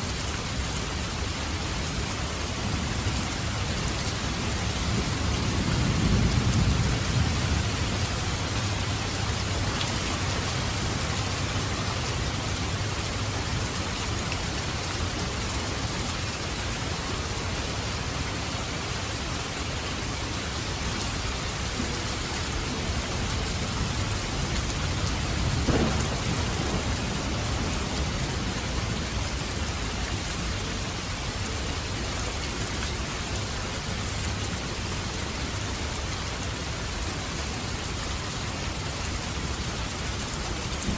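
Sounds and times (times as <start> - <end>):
heavy rain downpour: 0.0 - 40.9
thunder rumbling: 4.6 - 12.0, 21.8 - 30.5.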